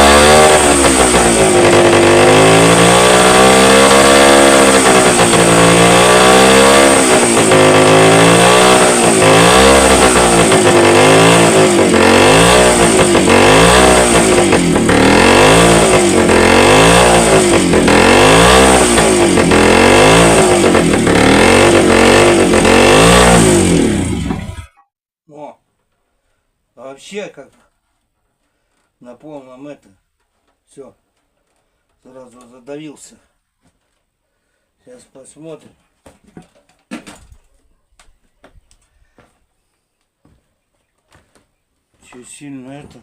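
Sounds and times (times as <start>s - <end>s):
motorcycle engine revving: 0.0s - 24.8s.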